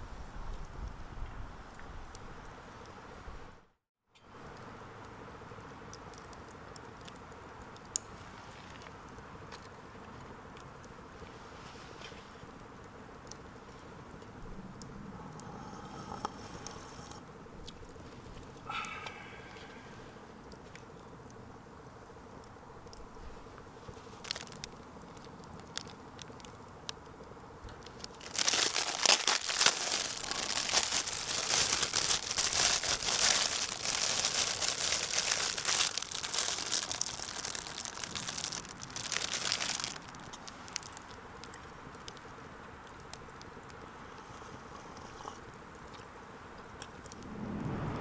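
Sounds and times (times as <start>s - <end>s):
faint ticks: 4.2s - 11.4s
crinkling and crumpling: 23.8s - 43.8s.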